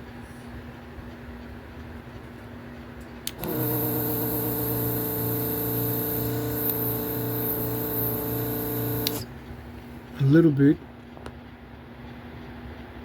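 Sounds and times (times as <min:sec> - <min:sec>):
vacuum pump humming: 0:03.0 - 0:10.1
switch click: 0:03.3 - 0:03.8
high hiss of air suction: 0:03.4 - 0:09.3.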